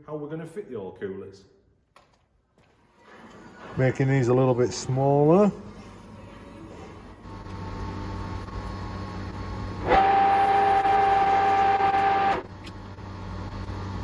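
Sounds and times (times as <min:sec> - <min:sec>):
metalworking tool whining: 0:07.3 - 0:14.0.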